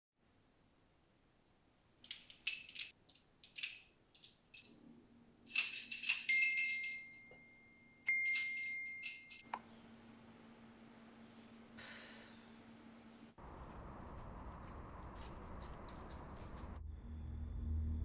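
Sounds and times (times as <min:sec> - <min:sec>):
metallic jingling: 0:02.0 - 0:04.8, 0:05.5 - 0:09.4, 0:13.4 - 0:16.8.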